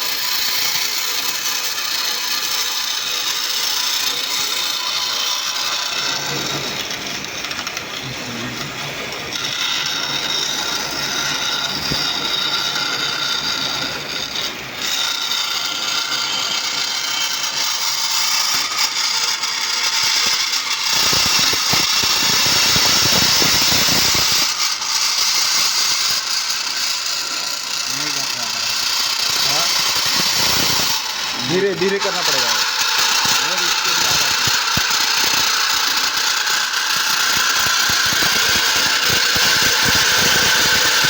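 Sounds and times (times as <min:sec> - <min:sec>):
band saw whirring: 0:00.0 - 0:41.0.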